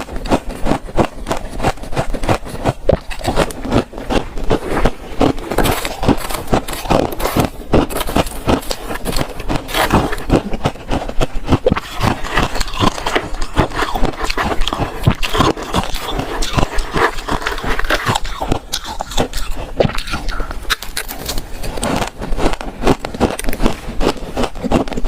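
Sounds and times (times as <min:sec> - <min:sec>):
frost crunching: 0:00.0 - 0:25.0.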